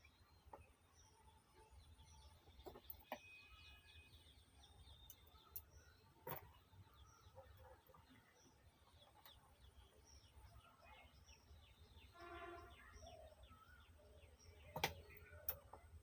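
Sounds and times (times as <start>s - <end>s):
faint birds chirping: 0.0s - 16.0s.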